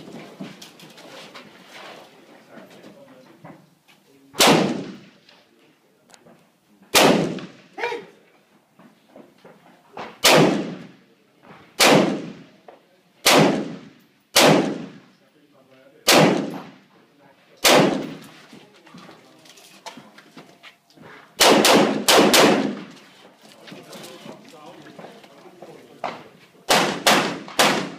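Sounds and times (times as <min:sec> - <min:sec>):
rifle shots with echo: 0:04.4 - 0:05.2, 0:06.9 - 0:07.7, 0:10.2 - 0:11.0, 0:11.8 - 0:12.6, 0:13.2 - 0:15.1, 0:16.0 - 0:16.8, 0:17.6 - 0:18.3, 0:21.4 - 0:23.0, 0:26.7 - 0:27.9.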